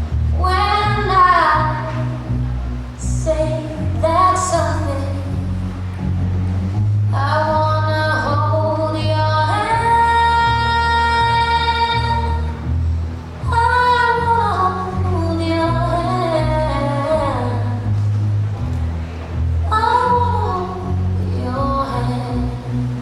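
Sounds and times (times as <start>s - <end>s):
recorded pop song: 0.0s - 2.4s, 3.0s - 6.1s, 7.1s - 12.6s, 19.7s - 23.0s
steady bass line: 0.0s - 23.0s
woman singing long notes: 0.4s - 2.3s, 3.0s - 5.6s, 7.1s - 12.5s.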